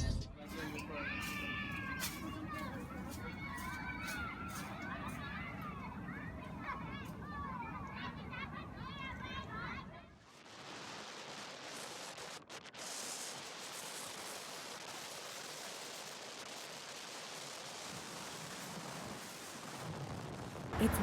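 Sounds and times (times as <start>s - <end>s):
static hiss: 10.2s - 21.0s.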